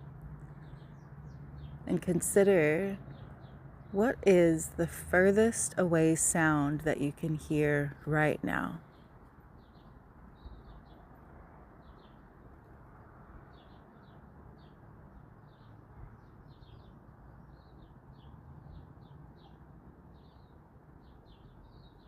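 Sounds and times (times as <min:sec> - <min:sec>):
outdoor ambience: 0:00.0 - 0:22.0
small birds chirping: 0:00.5 - 0:04.0, 0:06.2 - 0:11.1, 0:11.8 - 0:12.2, 0:13.5 - 0:22.0.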